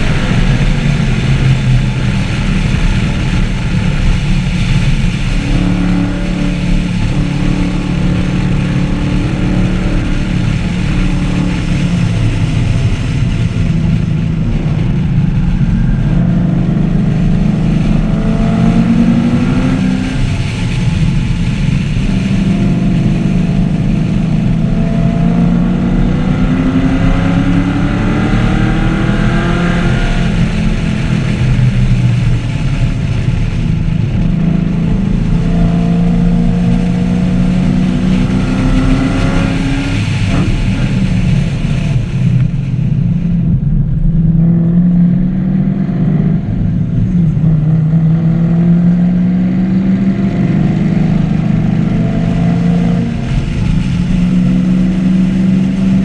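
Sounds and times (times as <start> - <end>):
car engine revving hard: 0.0 - 56.0.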